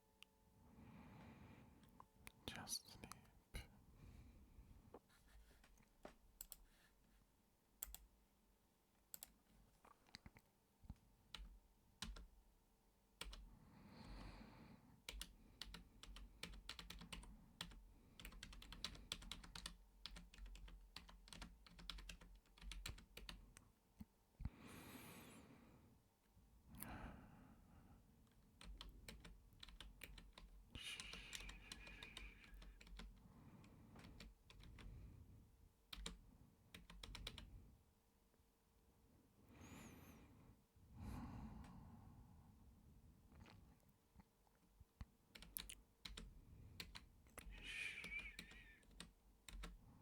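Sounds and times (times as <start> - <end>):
typing on computer keyboard: 7.8 - 8.1, 9.1 - 9.4, 11.3 - 12.4, 13.2 - 13.5, 15.1 - 23.4, 28.6 - 34.9, 35.9 - 37.5, 45.3 - 49.8.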